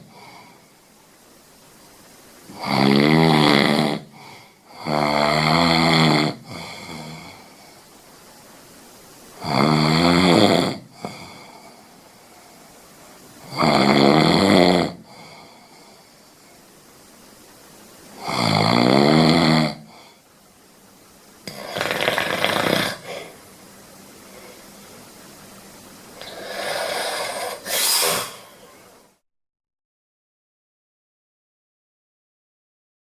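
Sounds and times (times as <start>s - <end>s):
cat snoring: 2.5s - 7.7s, 9.4s - 11.8s, 13.4s - 16.2s, 18.2s - 20.2s, 21.4s - 23.4s, 26.2s - 28.6s.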